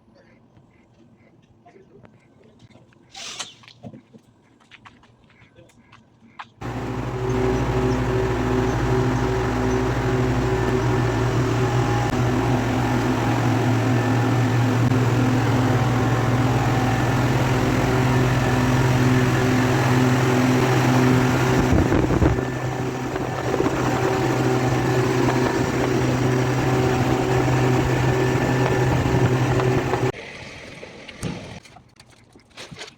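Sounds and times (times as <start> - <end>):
refrigeration compressor humming: 6.6 - 30.1.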